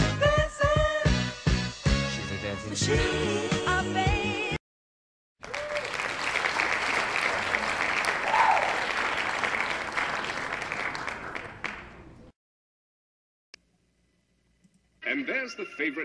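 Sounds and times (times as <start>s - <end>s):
crowd applauding: 5.4s - 12.2s
brief shout: 8.2s - 8.8s.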